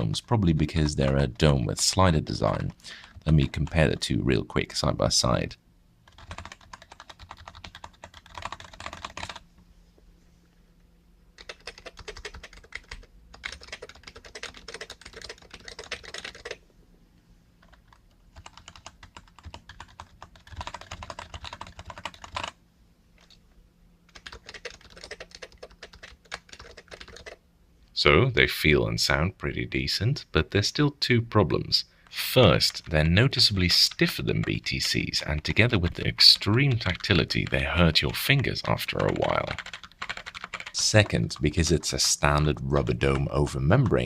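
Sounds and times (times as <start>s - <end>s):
rapid typing on keyboard: 2.4s - 4.1s, 6.0s - 9.4s, 11.4s - 16.6s, 17.6s - 22.6s, 24.1s - 27.4s, 36.2s - 41.6s.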